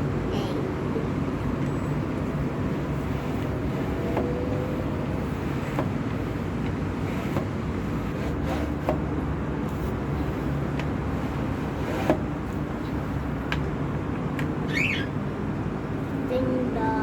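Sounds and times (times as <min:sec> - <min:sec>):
mop pushed across floor: 0:07.0 - 0:09.0.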